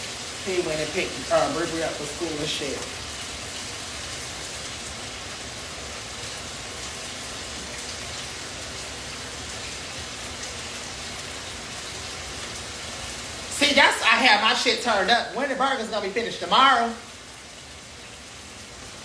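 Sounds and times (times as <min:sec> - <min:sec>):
burger patties sizzling in a pan: 0:00.0 - 0:19.0.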